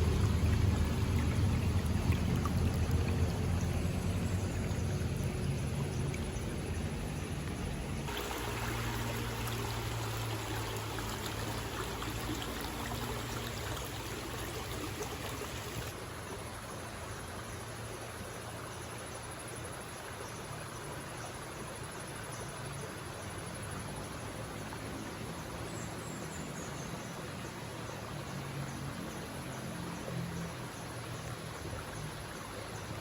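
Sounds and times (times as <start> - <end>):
river water rushing: 0.0 - 17.1.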